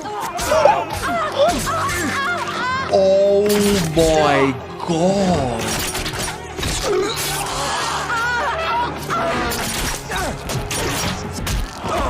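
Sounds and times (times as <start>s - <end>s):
wavering cries: 0.0s - 2.8s
dramatic music: 0.0s - 11.5s.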